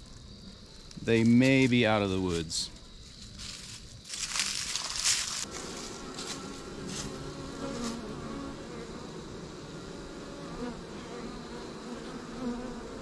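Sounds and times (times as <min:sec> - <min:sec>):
honeybees buzzing: 0:02.7 - 0:13.0.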